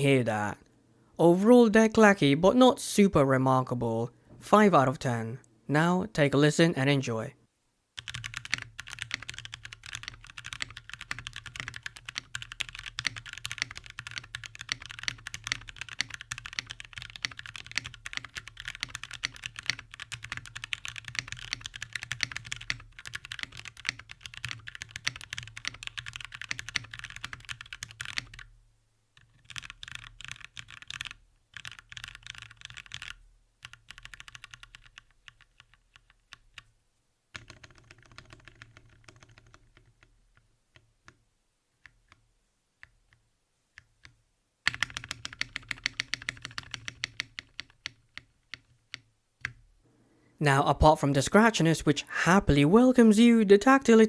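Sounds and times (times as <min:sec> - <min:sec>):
mechanical keyboard typing: 0:08.0 - 0:28.5, 0:29.2 - 0:36.7, 0:37.4 - 0:41.2, 0:44.7 - 0:49.5.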